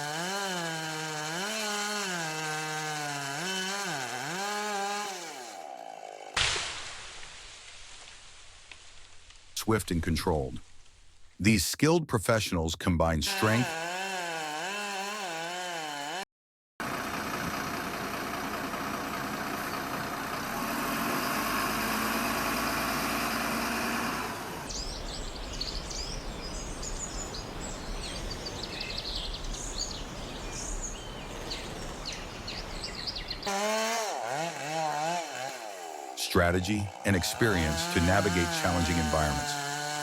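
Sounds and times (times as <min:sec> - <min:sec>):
birds chirping: 0:24.7 - 0:33.5, 0:36.2 - 0:39.6.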